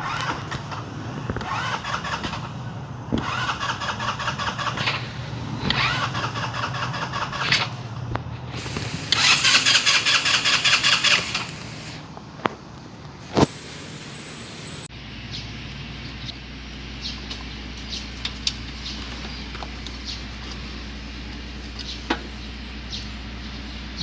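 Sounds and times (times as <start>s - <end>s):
scooter engine cranking: 8.5s - 12.0s, 13.1s - 14.9s.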